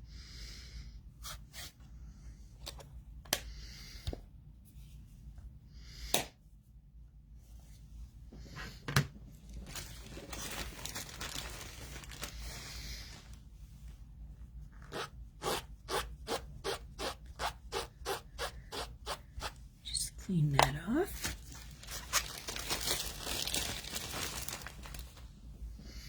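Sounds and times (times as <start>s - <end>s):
paper rustling and crinkling: 9.4s - 13.4s, 21.1s - 25.3s.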